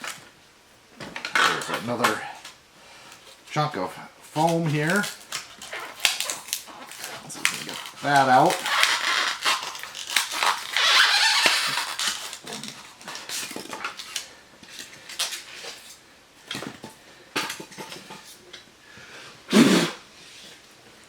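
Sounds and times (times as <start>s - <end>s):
packing foam rustling and rubbing: 4.2s - 14.3s.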